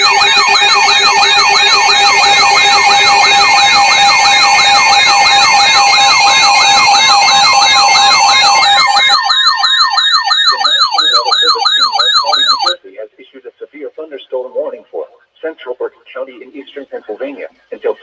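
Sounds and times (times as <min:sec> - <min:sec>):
electronic alert siren sweeping down: 0:00.0 - 0:12.8
fast electronic pulsing: 0:00.0 - 0:12.8
steady electronic tones: 0:00.0 - 0:12.8.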